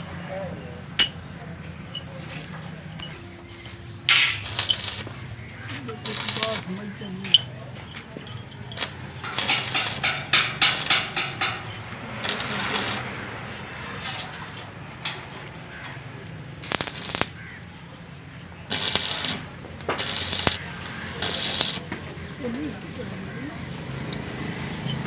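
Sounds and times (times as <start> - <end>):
arc welding crackling: 4.1 - 6.8, 8.8 - 11.6, 12.2 - 13.5, 16.6 - 17.6, 18.7 - 22.0.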